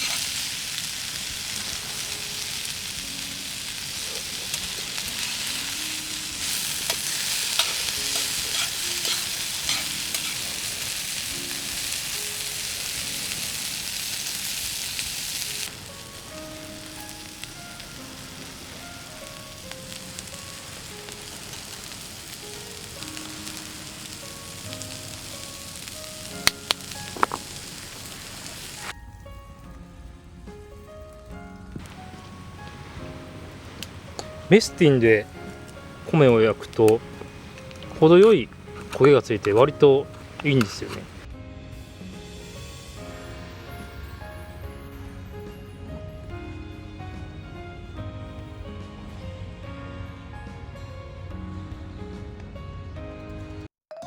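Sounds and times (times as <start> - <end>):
food sizzling in pan: 0.0 - 29.0, 31.8 - 41.3, 42.1 - 44.7.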